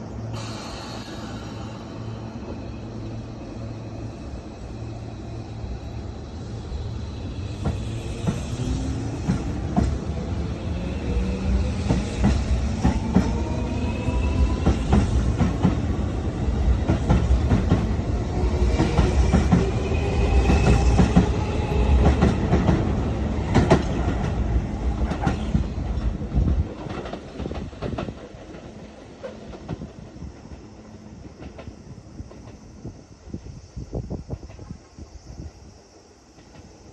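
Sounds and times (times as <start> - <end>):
train wheels clacking over rail joints: 7.5 - 30.0.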